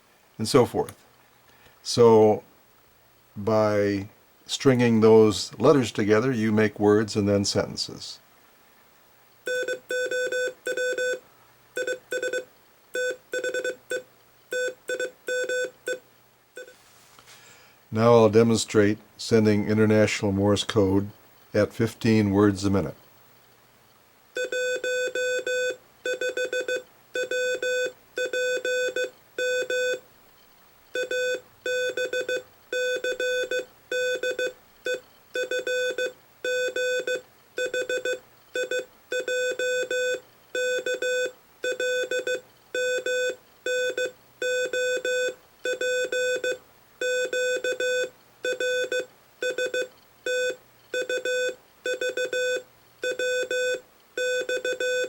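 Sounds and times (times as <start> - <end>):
morse code sidetone beeps: 9.5 - 11.2, 11.8 - 16.0, 24.4 - 30.0, 31.0 - 55.0.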